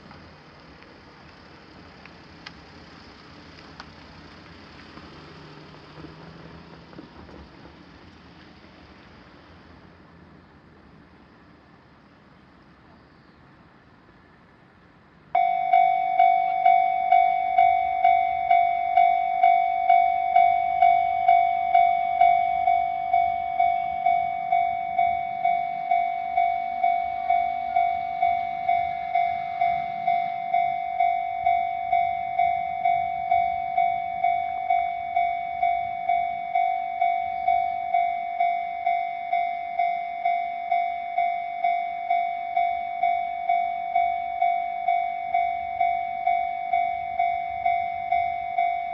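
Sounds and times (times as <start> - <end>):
crossing warning bell ringing: 15.3 - 48.9.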